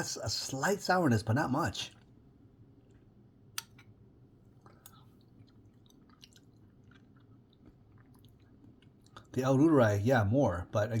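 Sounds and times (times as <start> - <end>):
low room hum: 0.0 - 11.0
lip and tongue smacks: 2.8 - 3.9, 4.6 - 9.3.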